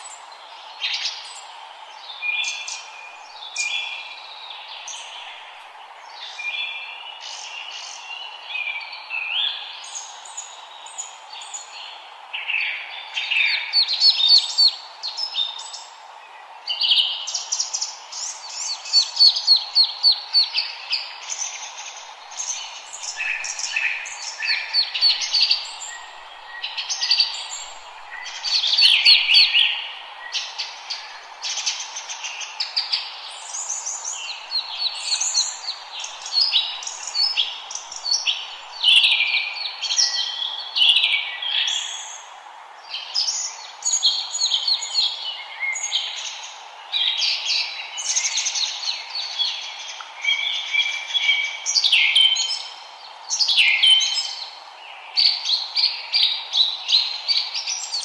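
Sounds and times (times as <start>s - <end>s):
songbirds chirping and trilling: 0.0s - 58.0s
steady background hiss: 0.0s - 58.0s.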